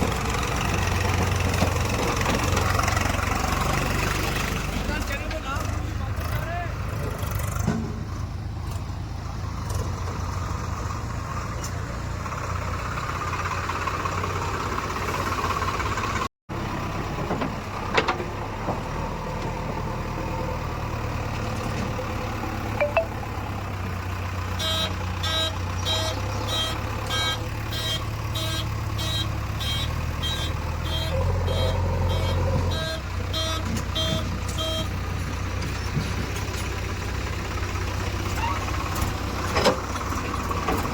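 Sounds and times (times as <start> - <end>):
heavy diesel engine running: 0.0 - 40.9
reversing alarm beeping: 22.8 - 23.1, 24.6 - 35.0.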